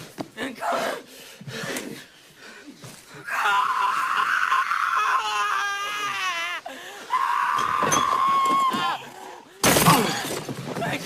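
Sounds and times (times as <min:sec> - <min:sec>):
person screaming: 0:03.2 - 0:09.1.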